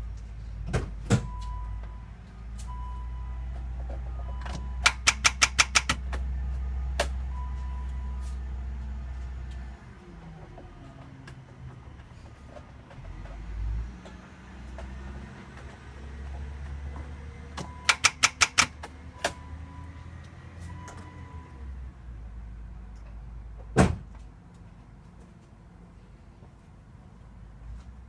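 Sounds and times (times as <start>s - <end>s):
sharp ignition clicks: 4.5s - 6.2s, 17.6s - 19.4s.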